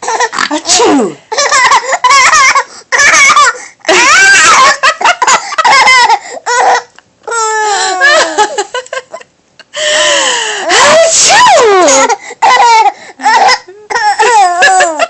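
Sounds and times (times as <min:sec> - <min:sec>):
baby laughing: 0:00.0 - 0:06.9, 0:11.6 - 0:15.0.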